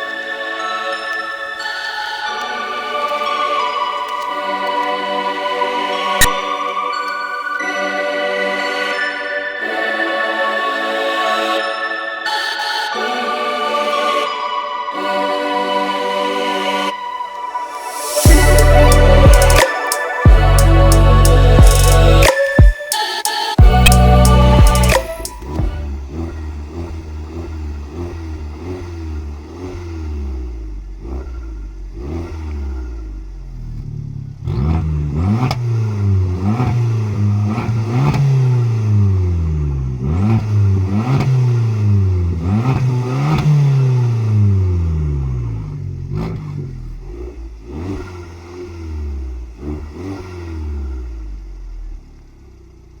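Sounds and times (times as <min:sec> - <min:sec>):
car engine idling and revving: 0:06.2 - 0:06.5, 0:18.0 - 0:19.7, 0:20.3 - 0:22.3, 0:23.6 - 0:53.0.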